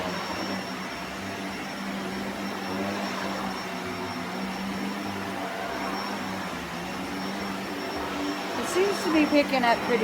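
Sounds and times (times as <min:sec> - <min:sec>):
upright vacuum cleaner running: 0:00.0 - 0:10.0.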